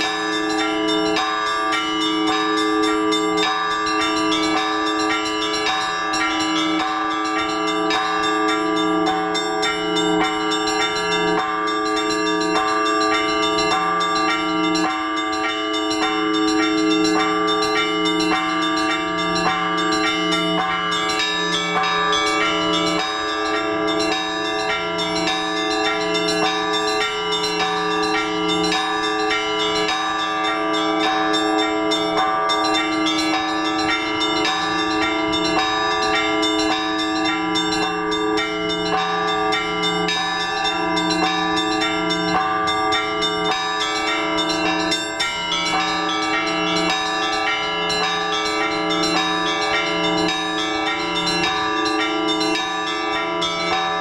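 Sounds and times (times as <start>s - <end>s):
hum of large bells: 0.0s - 54.0s
small bells struck quickly: 0.0s - 54.0s.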